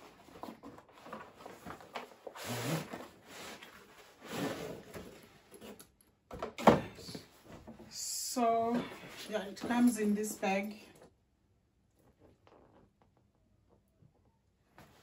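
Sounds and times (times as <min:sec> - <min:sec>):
cardboard packaging rustling: 0:00.0 - 0:05.8.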